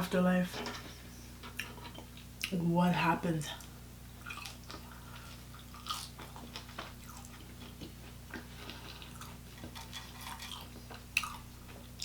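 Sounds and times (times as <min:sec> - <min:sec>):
chewing and biting food: 0:04.2 - 0:12.0.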